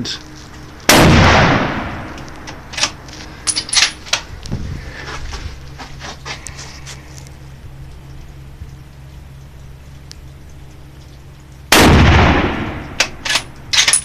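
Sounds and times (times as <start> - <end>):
rifle shot with echo: 0.9 - 2.1, 11.7 - 13.2.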